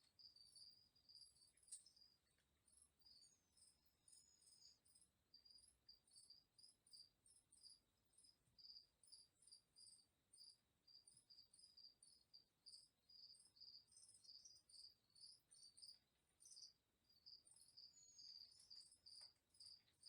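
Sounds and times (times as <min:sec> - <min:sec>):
crickets chirping: 0:00.0 - 0:20.0.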